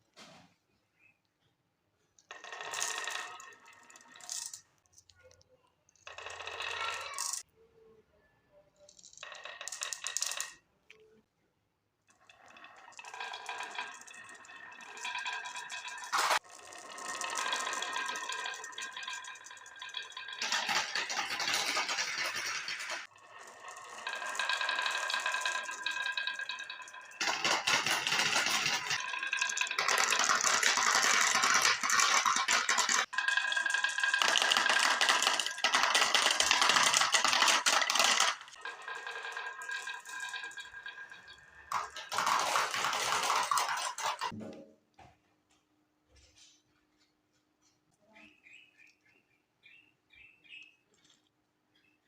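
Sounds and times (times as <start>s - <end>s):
marbles rattling down wooden run: 2.2s - 7.4s, 8.9s - 10.6s, 12.1s - 44.4s.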